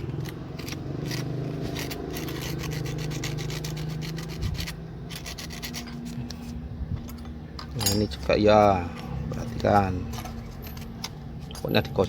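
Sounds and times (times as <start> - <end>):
sandpaper rubbing on metal: 0.6 - 6.6.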